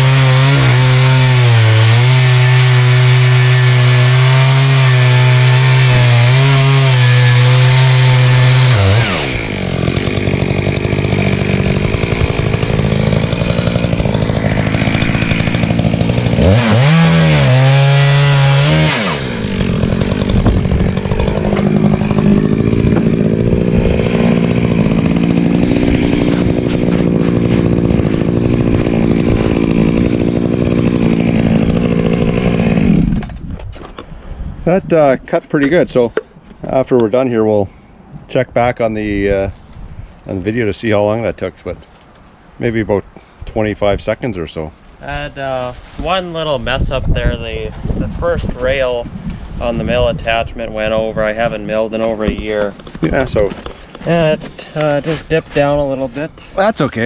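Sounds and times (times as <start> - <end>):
chainsaw cutting log: 0.0 - 33.4.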